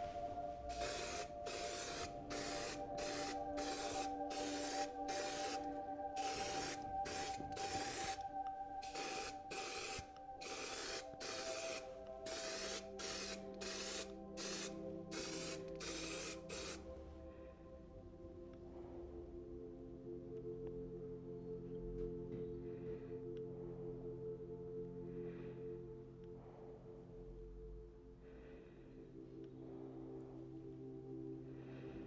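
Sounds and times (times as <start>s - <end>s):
spray paint bursts: 0.7s - 8.2s, 8.8s - 16.8s.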